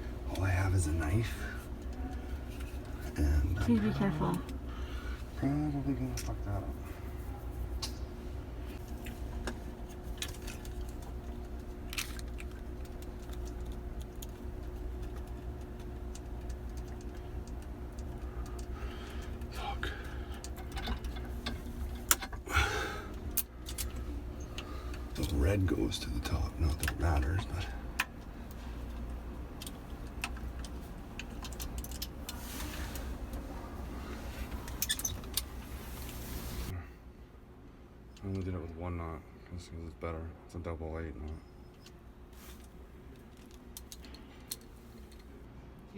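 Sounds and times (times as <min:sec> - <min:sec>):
steady low hum: 0:00.0 - 0:45.9
small parts clicking: 0:43.2 - 0:45.3.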